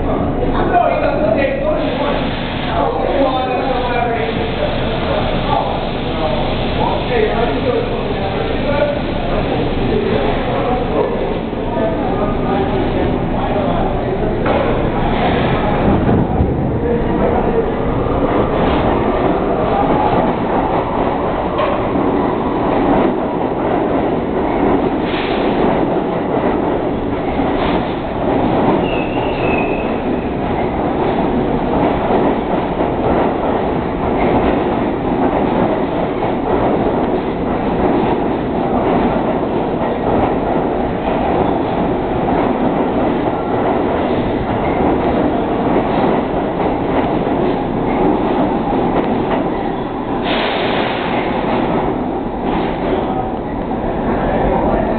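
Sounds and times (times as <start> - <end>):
subway train rumbling: 0.0 - 54.9
high wheel squeal: 28.8 - 30.2.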